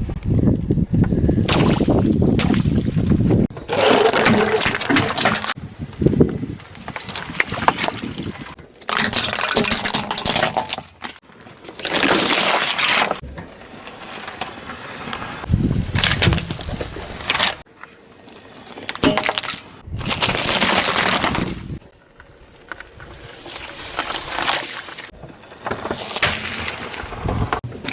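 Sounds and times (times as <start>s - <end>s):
objects crunching and breaking: 1.4s - 5.6s, 6.9s - 17.7s, 18.3s - 21.8s.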